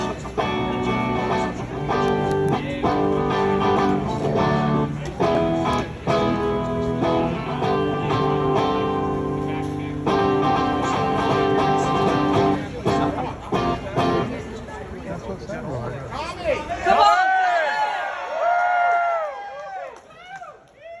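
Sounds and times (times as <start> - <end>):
guitar strumming chords: 0.0 - 14.4.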